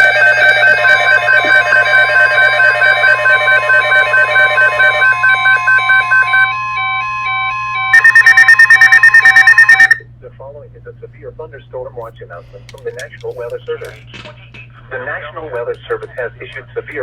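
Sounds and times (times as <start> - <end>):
overlapping electronic beeps: 0.0 - 10.0
rapid loud beeping: 0.0 - 10.0
steady warning tone: 0.0 - 10.0.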